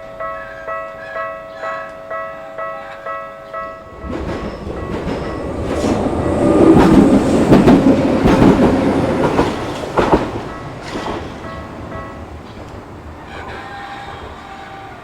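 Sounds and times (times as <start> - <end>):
railway crossing bell dinging: 0.0 - 14.0
train wheels clacking over rail joints: 3.9 - 14.6.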